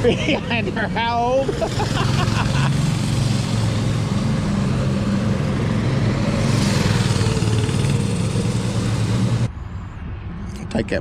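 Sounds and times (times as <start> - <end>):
small engine running: 1.4 - 9.4.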